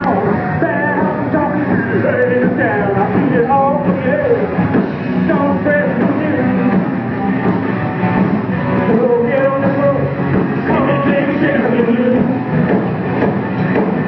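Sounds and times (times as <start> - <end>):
person singing: 0.0 - 4.6, 5.2 - 7.1, 8.6 - 12.5
live rock band playing: 0.0 - 14.0.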